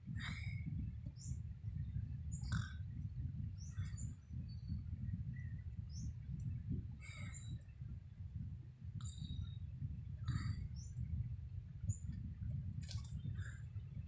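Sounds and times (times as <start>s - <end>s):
steady low rumble: 0.0s - 14.0s
birds chirping: 0.1s - 7.8s, 9.0s - 11.2s.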